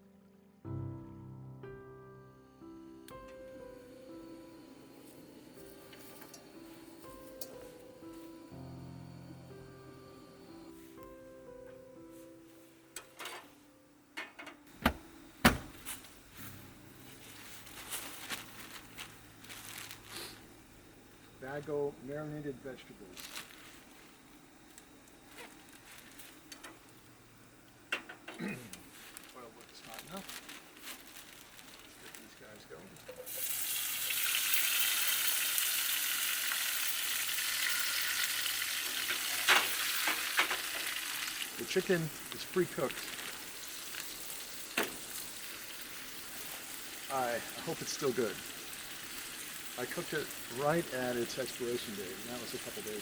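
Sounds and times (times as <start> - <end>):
cooking gear knocking and clattering: 13.0 - 13.5, 14.2 - 15.7, 27.9 - 28.5, 38.9 - 40.9
vegetables sizzling in oil: 16.2 - 20.6, 30.0 - 53.0.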